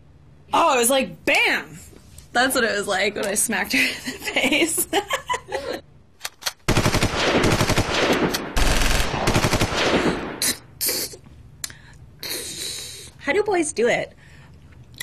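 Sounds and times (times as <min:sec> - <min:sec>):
machine-gun fire: 0:06.6 - 0:10.7.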